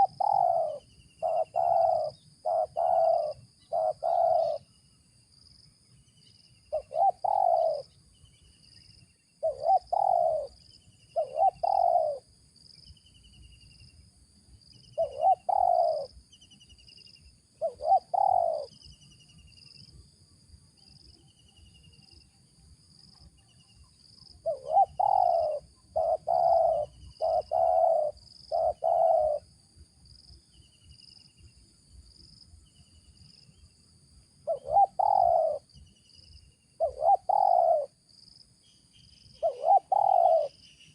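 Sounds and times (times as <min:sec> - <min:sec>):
dove cooing: 0:00.0 - 0:04.6, 0:06.7 - 0:07.9, 0:09.4 - 0:12.3, 0:15.0 - 0:16.2, 0:17.6 - 0:18.8, 0:24.4 - 0:29.5, 0:34.4 - 0:35.9, 0:36.8 - 0:38.0, 0:39.3 - 0:40.6
faint high chirping and trilling: 0:00.0 - 0:04.8, 0:06.2 - 0:12.2, 0:14.9 - 0:19.8, 0:23.4 - 0:29.5, 0:34.5 - 0:37.9, 0:38.7 - 0:40.9.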